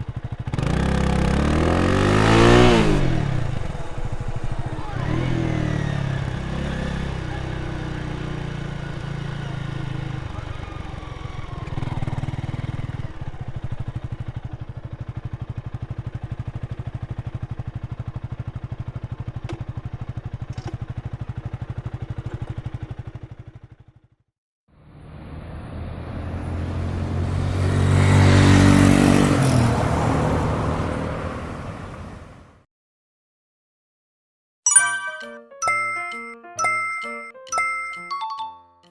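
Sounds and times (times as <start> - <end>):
motorcycle driving by: 0.0 - 24.1, 24.8 - 32.3
motorcycle engine revving and idling: 0.0 - 25.0.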